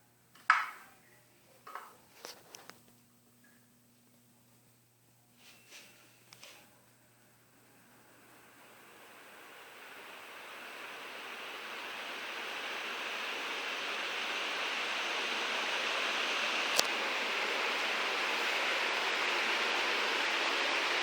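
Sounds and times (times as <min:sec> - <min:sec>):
ceiling fan air rush: 0:05.7 - 0:21.0.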